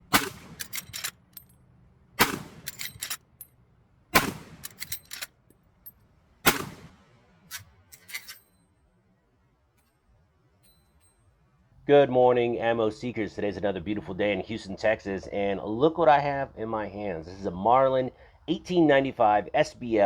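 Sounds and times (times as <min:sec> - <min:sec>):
rifle shots: 0:00.0 - 0:01.2, 0:02.2 - 0:03.2, 0:04.1 - 0:05.3, 0:06.4 - 0:08.4
rifle action clicks and knocks: 0:00.2 - 0:01.6, 0:02.2 - 0:03.6, 0:04.2 - 0:06.9, 0:07.5 - 0:08.6.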